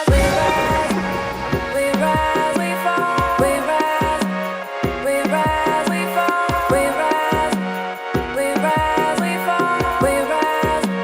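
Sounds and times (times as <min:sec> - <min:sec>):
bass drum hits dropping in pitch: 0:00.0 - 0:02.8.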